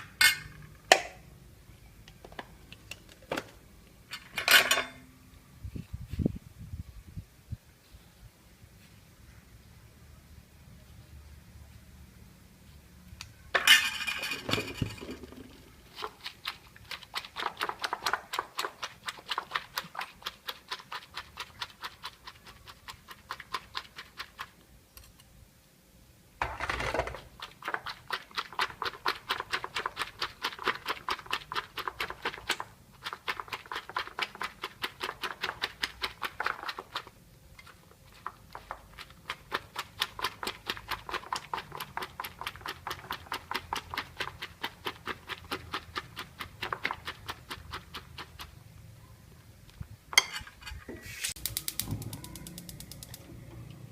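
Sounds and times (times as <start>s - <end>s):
eggs beaten in a bowl: 14.0s - 24.7s, 26.4s - 48.8s, 50.1s - 53.6s.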